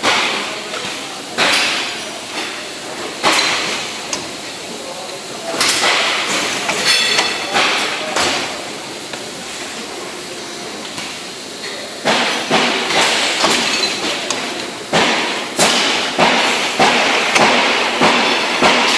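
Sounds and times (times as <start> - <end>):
tube bending machine running: 0.0 - 18.9.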